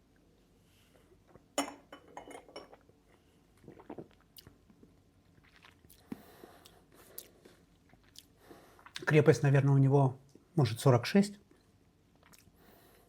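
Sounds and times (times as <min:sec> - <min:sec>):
glass clink: 0:01.6 - 0:02.8.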